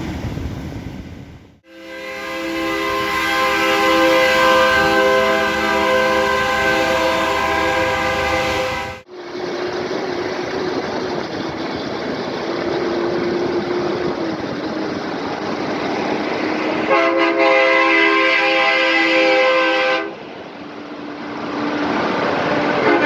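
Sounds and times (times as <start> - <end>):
air horn blasting a chord: 1.6 - 9.1, 16.9 - 20.2, 22.8 - 23.0.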